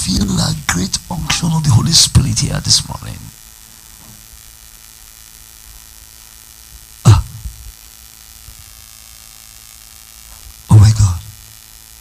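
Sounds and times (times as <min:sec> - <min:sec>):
electrical mains hum: 0:00.0 - 0:12.0.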